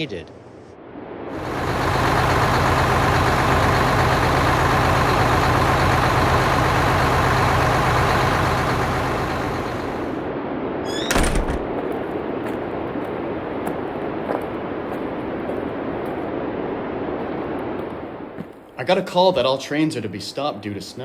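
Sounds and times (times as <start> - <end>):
locomotive engine rumbling: 1.4 - 10.3, 10.9 - 15.4.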